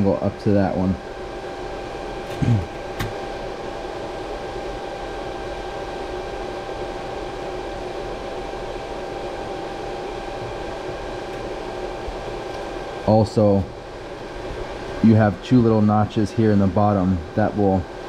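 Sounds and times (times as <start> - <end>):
fan whirring hum: 0.0 - 18.0.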